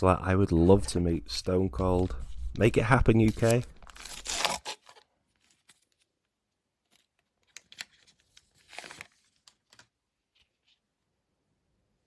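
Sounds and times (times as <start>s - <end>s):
cards and foil wrapper crinkling: 3.1s - 6.1s, 6.8s - 10.8s.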